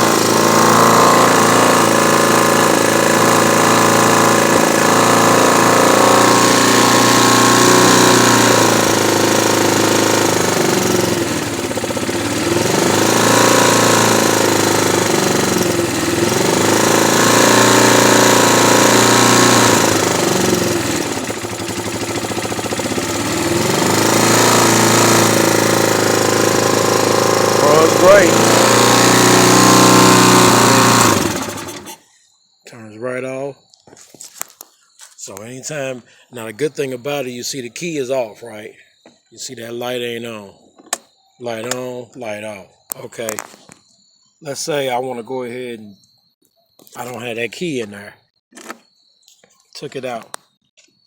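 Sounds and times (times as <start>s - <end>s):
atv engine idling: 0.0s - 32.0s.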